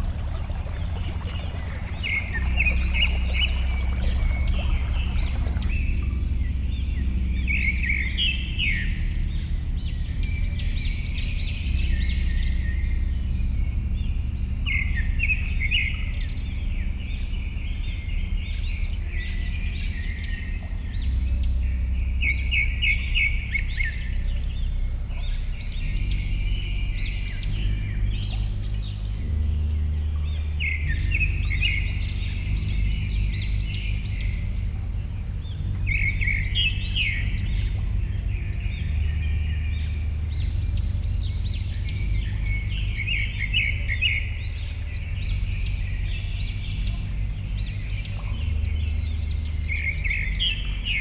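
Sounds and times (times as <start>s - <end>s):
trickling water: 0.0s - 6.4s
songbirds chirping and trilling: 0.0s - 51.0s
steady low rumble: 0.0s - 51.0s.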